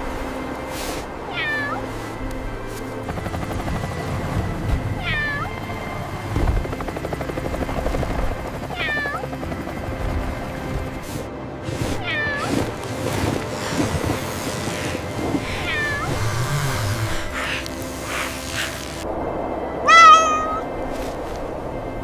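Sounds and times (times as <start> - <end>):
cat meowing: 1.3 - 1.8, 5.0 - 5.5, 8.8 - 9.2, 12.0 - 12.5, 15.5 - 16.2, 19.9 - 20.8.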